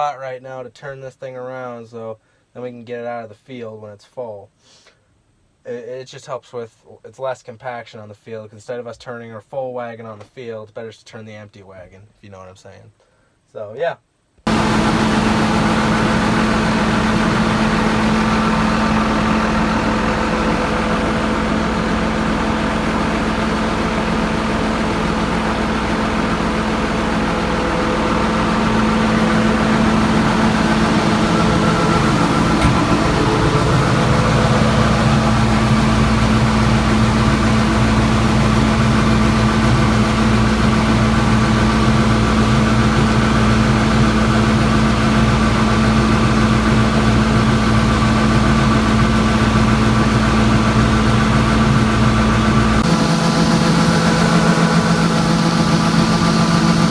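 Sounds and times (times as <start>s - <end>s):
deep low tone: 14.5s - 37.4s
diesel engine running: 14.5s - 56.9s.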